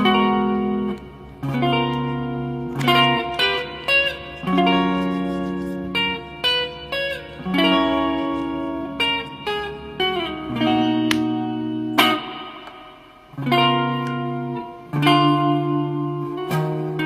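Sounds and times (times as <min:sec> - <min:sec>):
plucked guitar chords: 0:00.0 - 0:17.0.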